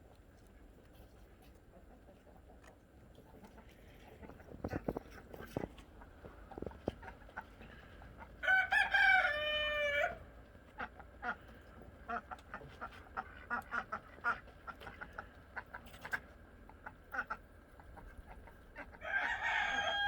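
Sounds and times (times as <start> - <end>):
chickens clucking: 0.0 - 19.9
rooster crowing: 8.4 - 10.3, 19.0 - 20.0.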